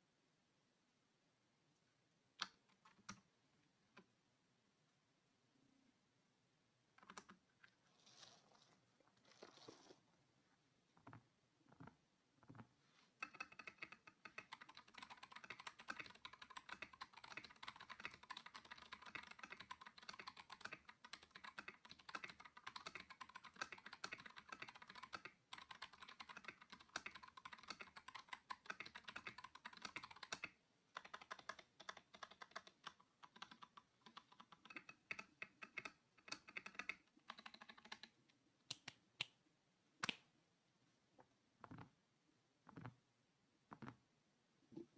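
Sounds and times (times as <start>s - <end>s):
mechanical keyboard typing: 7.0s - 7.4s, 13.2s - 38.2s.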